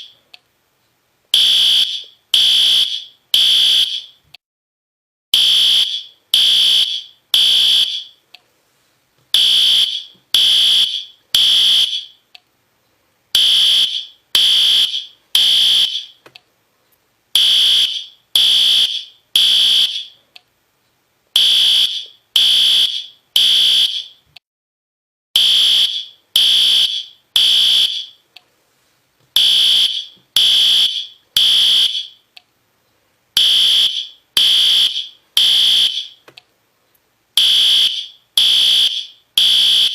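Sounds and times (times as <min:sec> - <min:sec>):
fire alarm horn blasts: 0:01.4 - 0:04.2, 0:05.4 - 0:08.2, 0:09.4 - 0:12.2, 0:13.4 - 0:16.2, 0:17.4 - 0:20.2, 0:21.4 - 0:24.2, 0:25.4 - 0:28.2, 0:29.4 - 0:32.2, 0:33.4 - 0:36.2, 0:37.4 - 0:39.9.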